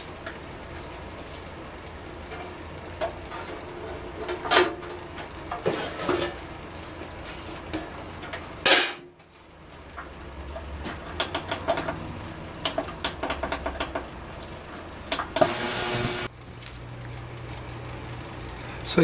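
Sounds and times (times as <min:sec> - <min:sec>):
steady low hum: 0:15.4 - 0:16.3.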